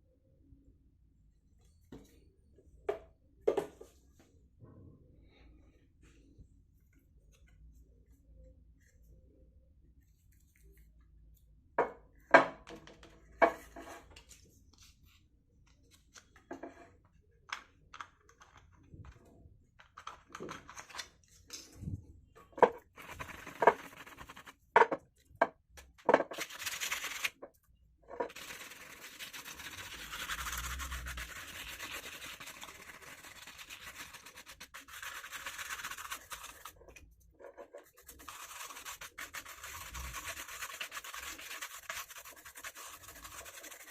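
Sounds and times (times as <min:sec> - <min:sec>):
hand rubbing and scrubbing: 0:22.8 - 0:24.7, 0:28.3 - 0:43.9.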